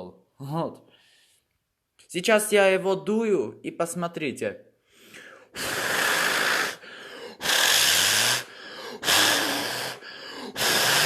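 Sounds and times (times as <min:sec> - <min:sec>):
sharp breaths drawn in: 0:00.9 - 0:01.6, 0:04.8 - 0:11.0
person blowing puffs: 0:04.9 - 0:11.0.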